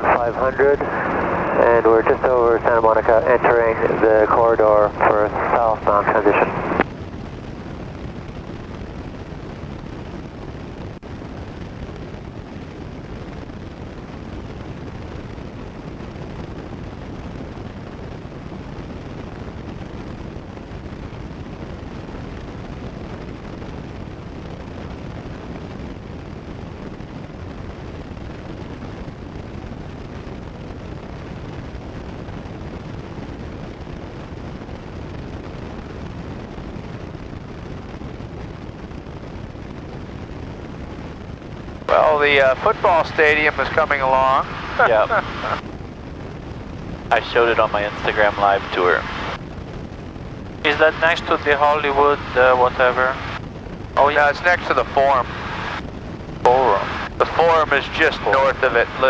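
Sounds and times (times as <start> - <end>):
aircraft engine drone: 0.0 - 16.3, 41.8 - 59.0.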